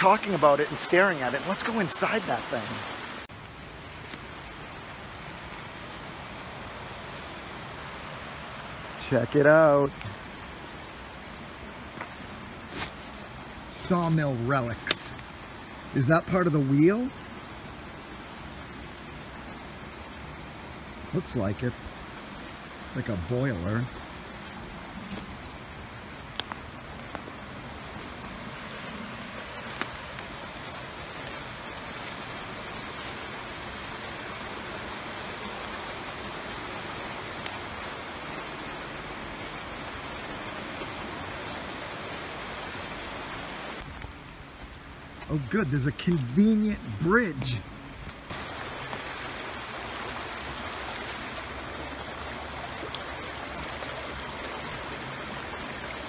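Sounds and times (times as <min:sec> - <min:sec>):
river rushing: 0:00.0 - 0:56.0.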